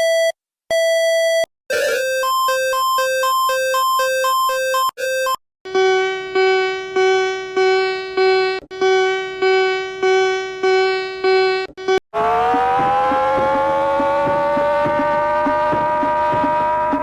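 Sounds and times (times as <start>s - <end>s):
rising pitch tone: 11.8s - 17.0s.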